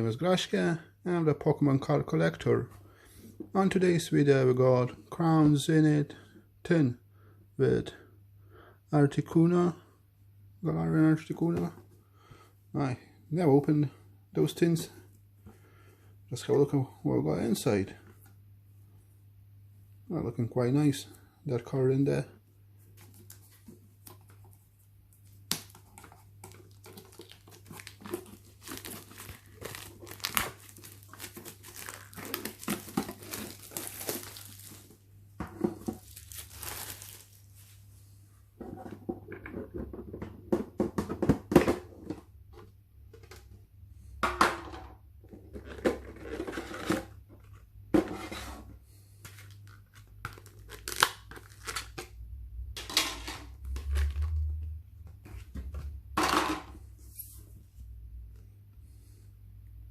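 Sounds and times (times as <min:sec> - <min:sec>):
plastic packaging crinkling and tearing: 0:25.2 - 0:35.0, 0:35.8 - 0:37.8, 0:49.3 - 0:52.1.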